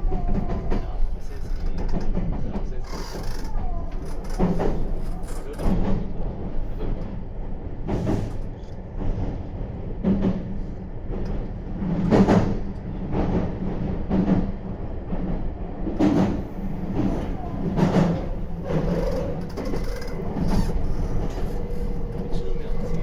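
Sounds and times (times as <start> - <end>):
wheels thudding over rail joints: 16.0 - 23.0
electric train motor hum: 16.4 - 23.0.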